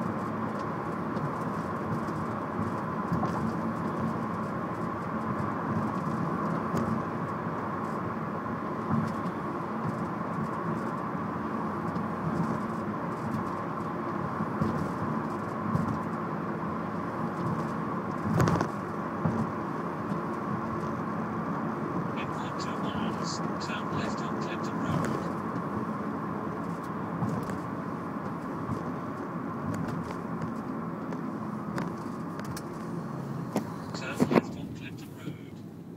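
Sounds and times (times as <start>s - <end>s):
car engine humming: 0.0s - 35.9s.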